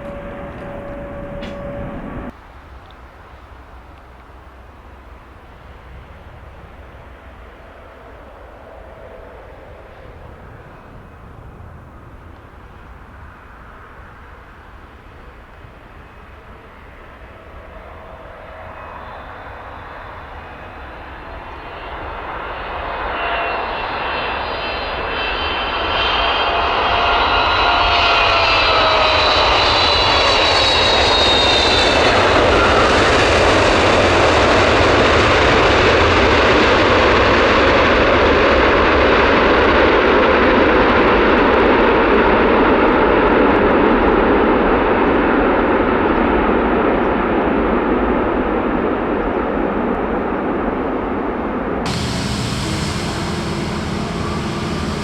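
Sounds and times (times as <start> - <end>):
jet engines roaring: 0.0 - 2.3, 51.9 - 55.0
whining fan tones: 0.0 - 2.4, 51.9 - 55.0.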